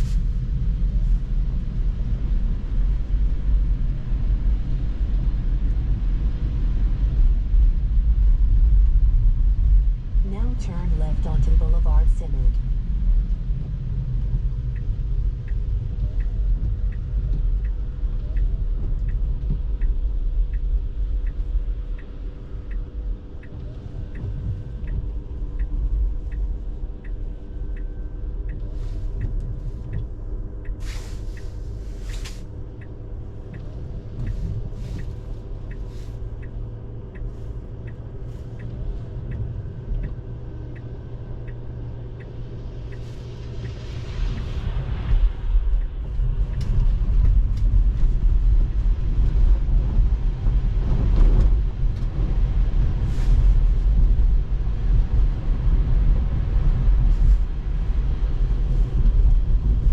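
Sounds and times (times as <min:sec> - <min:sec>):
road and tyre rumble: 0:00.0 - 0:59.9
turn signal ticking: 0:09.6 - 0:49.4.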